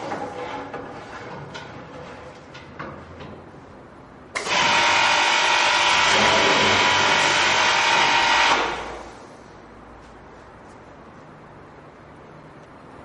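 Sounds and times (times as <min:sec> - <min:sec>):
motor start click: 0:04.4 - 0:05.0.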